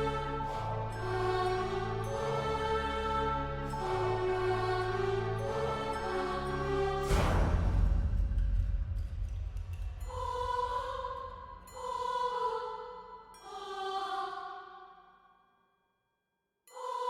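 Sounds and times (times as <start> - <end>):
deep low rumble: 7.1 - 11.6.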